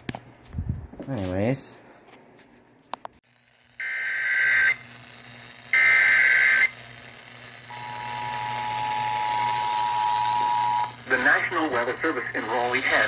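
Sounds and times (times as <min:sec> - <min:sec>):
radio hum: 0:03.7 - 0:13.0.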